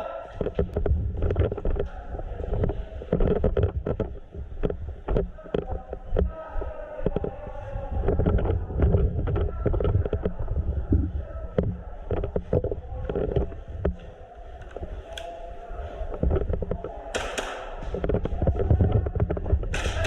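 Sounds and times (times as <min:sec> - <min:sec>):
sharp clicks and knocks: 0:00.4 - 0:06.4.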